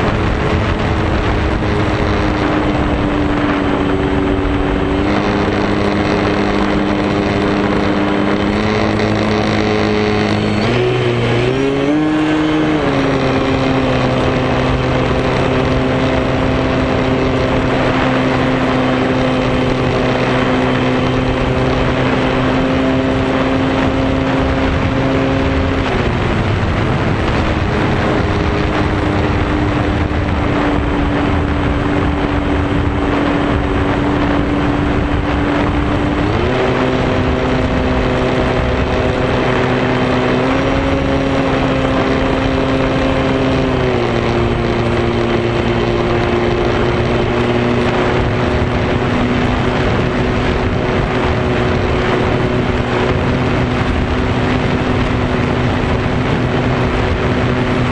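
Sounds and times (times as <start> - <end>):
air rush noise: 0.0 - 20.5.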